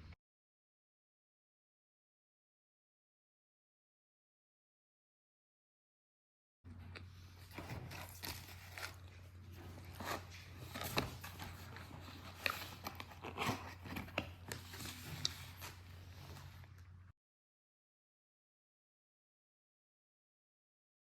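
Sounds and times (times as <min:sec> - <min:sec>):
low steady hum: 0:06.7 - 0:17.1
clicks crackles and crunches: 0:06.9 - 0:15.8.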